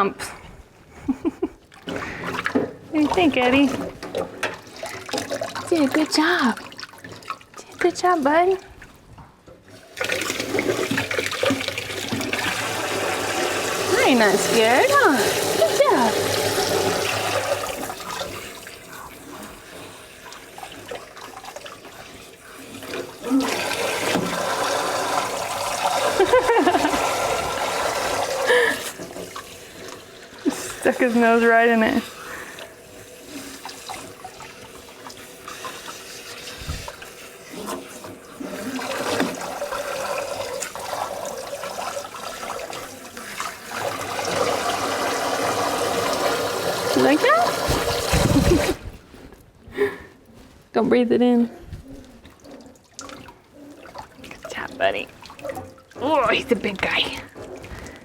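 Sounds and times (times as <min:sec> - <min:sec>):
water lapping and dripping: 0:01.6 - 0:49.5, 0:50.2 - 0:58.0
small water splashes: 0:52.0 - 0:58.0.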